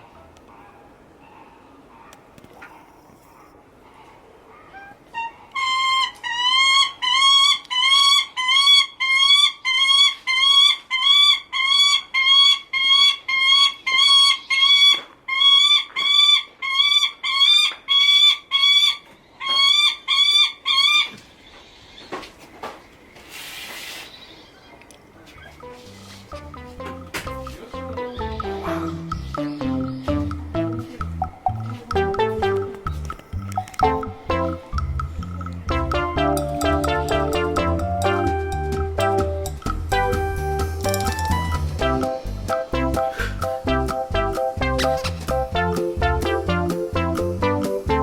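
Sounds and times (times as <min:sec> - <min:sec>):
falcon calling harshly: 0:04.8 - 0:21.1, 0:27.3 - 0:30.4.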